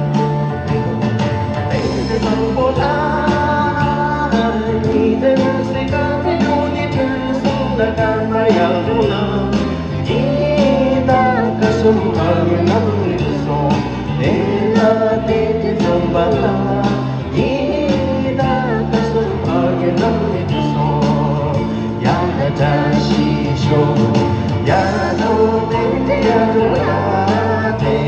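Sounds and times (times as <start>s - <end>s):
instrumental backing with bass and beat: 0.0s - 28.0s
person singing pop song: 0.0s - 28.0s.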